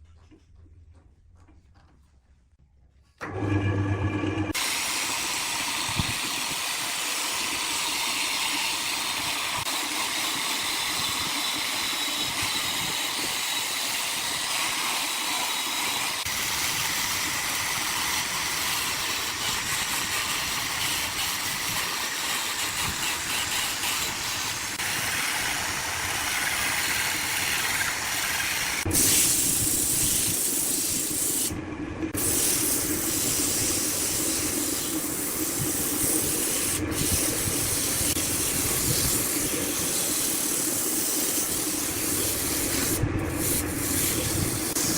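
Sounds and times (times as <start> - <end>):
wood lathe hissing: 4.5 - 31.6, 32.2 - 44.9.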